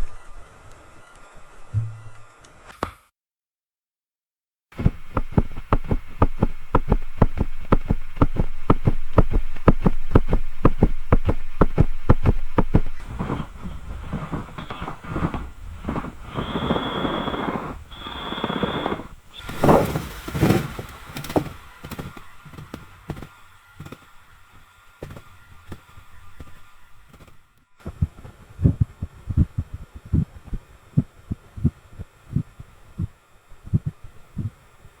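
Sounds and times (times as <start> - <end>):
high squeal: 13.0 - 24.0
soft thuds: 18.4 - 24.0.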